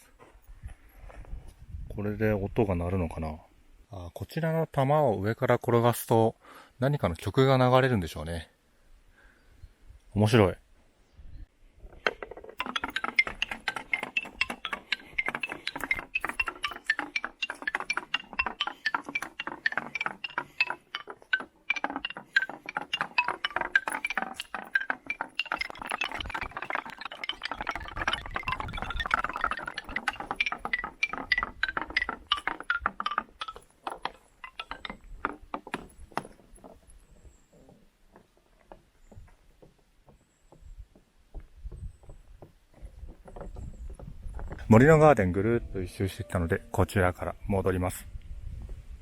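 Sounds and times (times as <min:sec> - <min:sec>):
wooden ball on xylophone bars: 0:11.8 - 0:48.8.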